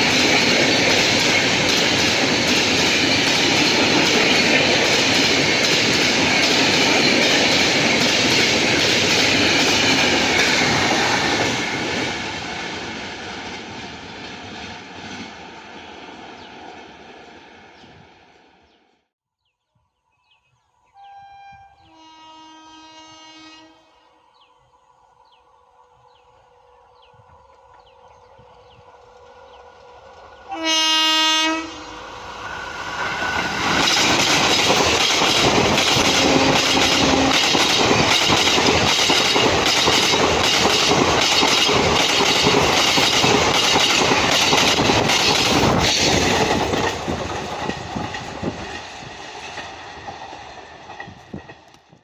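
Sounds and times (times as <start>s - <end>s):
train passing at speed: 0.0s - 19.1s, 21.0s - 52.0s
locomotive horn blast: 21.0s - 24.1s, 30.5s - 32.0s
wheels clacking over rail joints: 33.0s - 52.0s.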